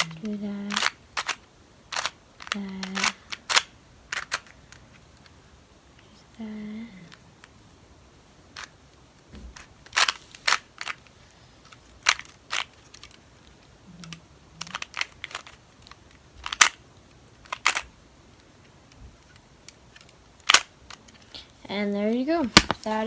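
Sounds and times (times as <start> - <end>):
plastic puzzle cube clicking: 0.0 - 5.3, 8.5 - 9.0, 9.6 - 21.3.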